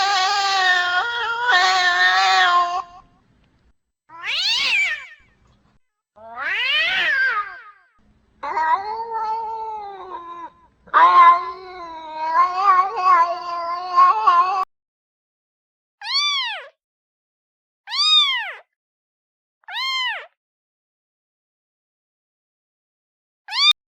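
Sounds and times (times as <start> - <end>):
cat meowing: 0.0 - 3.0, 4.1 - 5.2, 6.2 - 7.8, 8.4 - 14.7, 23.5 - 23.8.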